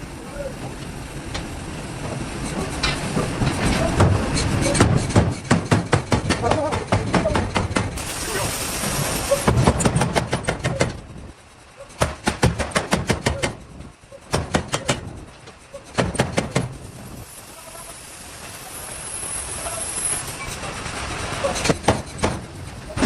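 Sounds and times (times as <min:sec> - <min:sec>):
rapid sharp knocks: 0:04.8 - 0:08.0, 0:12.0 - 0:13.6
steady hiss: 0:08.0 - 0:09.8, 0:16.7 - 0:21.5.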